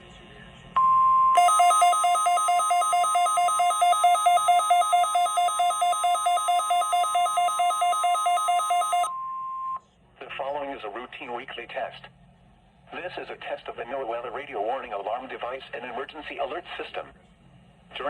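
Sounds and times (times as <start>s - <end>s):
steady warning alarm tone: 1.4s - 9.1s
warbling electronic alarm: 1.4s - 9.1s.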